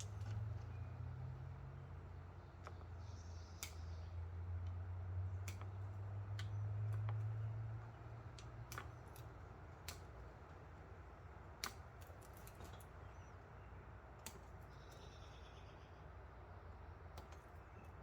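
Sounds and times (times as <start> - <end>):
hand tools snipping wire: 5.4 - 7.2.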